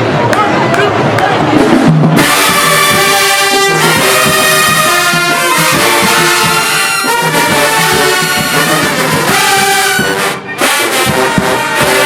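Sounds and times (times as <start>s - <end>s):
brass band playing chords: 0.0s - 12.0s.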